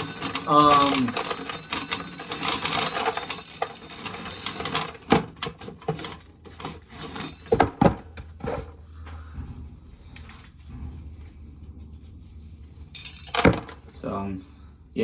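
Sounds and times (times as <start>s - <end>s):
corn kernels clicking and rattling: 0.0s - 4.1s.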